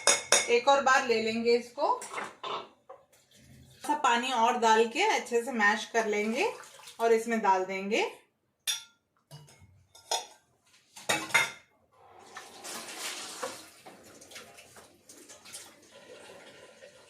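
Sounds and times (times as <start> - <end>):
liquid being poured: 12.2 - 17.0.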